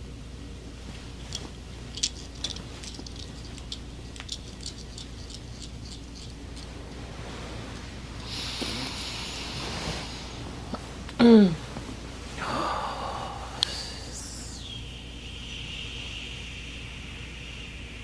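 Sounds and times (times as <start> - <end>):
low electrical hum: 0.0 - 18.0
faint clicks and rustles: 0.8 - 7.0
soft hiss: 0.8 - 18.0.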